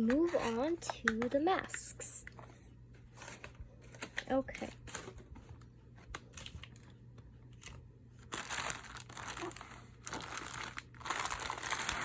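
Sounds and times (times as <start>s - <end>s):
packaging crinkling: 6.1s - 12.0s.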